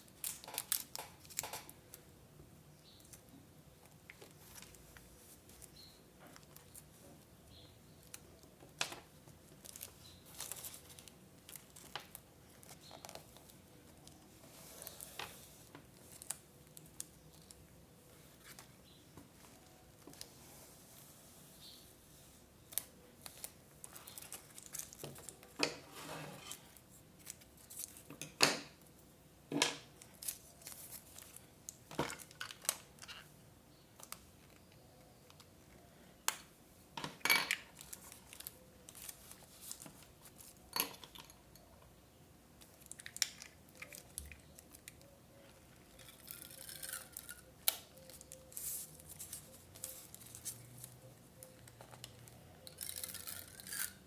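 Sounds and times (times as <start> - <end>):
paper rustling: 48.0 - 51.1.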